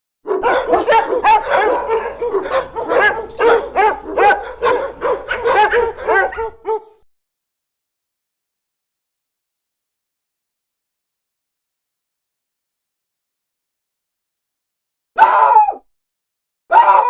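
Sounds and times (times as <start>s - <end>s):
dog barking: 0.3s - 7.0s, 15.2s - 15.7s, 16.7s - 17.0s.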